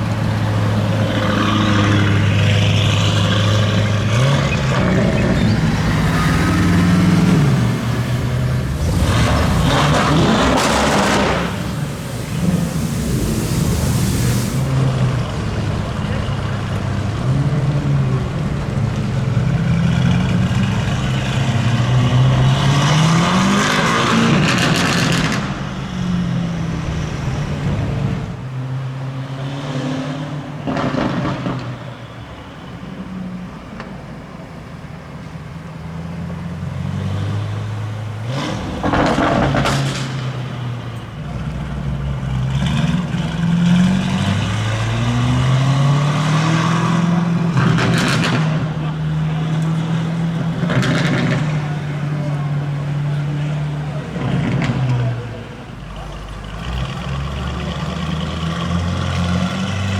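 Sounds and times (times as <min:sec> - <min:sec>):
exhaust crackle: 0:00.0 - 0:21.9
car engine accelerating hard: 0:00.0 - 0:31.6, 0:36.1 - 0:59.9.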